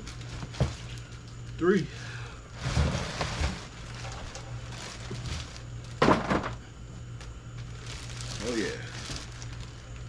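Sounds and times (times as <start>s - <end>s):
generator knocking and scraping: 2.5s - 6.6s.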